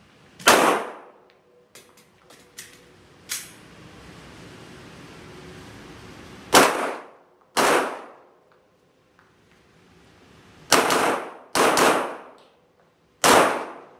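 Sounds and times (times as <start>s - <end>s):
pistol shots: 0.4s - 1.2s, 6.5s - 8.2s, 10.7s - 12.4s, 13.2s - 13.9s.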